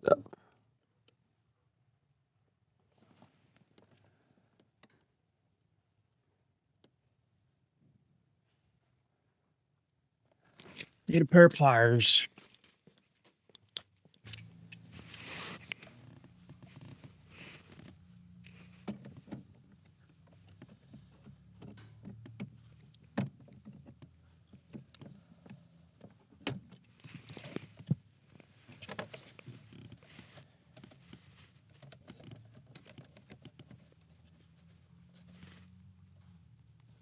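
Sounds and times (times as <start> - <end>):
metallic clicks of hand tools: 14.2 - 14.9.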